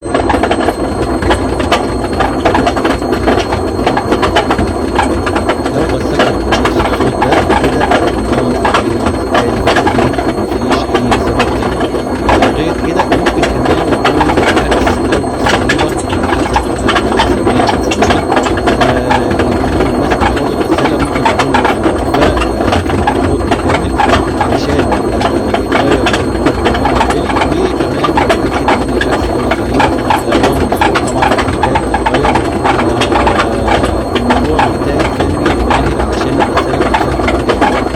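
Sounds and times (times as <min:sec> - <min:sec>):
low hum: 0:00.0 - 0:37.9.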